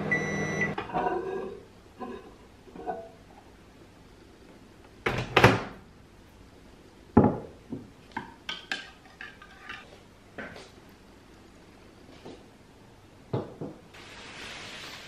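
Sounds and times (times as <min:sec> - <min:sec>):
dishes and utensils clattering: 0:00.8 - 0:03.2, 0:08.5 - 0:09.9.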